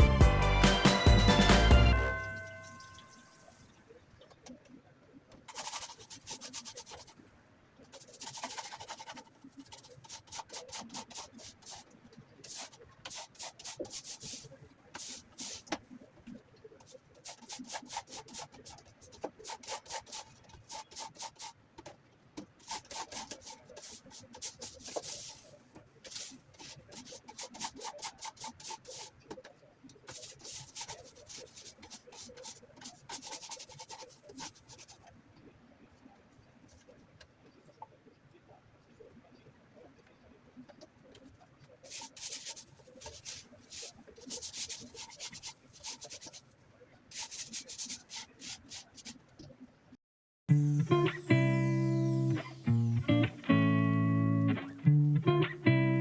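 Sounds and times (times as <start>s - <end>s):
hand scrubbing: 5.5s - 7.1s, 8.0s - 11.8s, 12.4s - 15.7s, 16.8s - 21.6s, 22.6s - 29.2s, 30.1s - 35.1s, 41.8s - 46.4s, 47.1s - 49.2s.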